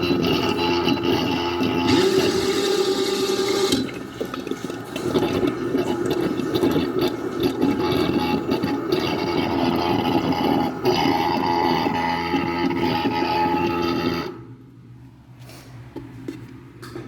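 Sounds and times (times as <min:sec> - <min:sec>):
washing machine motor hum: 0:00.0 - 0:17.0
water sloshing in a tub: 0:01.8 - 0:09.9.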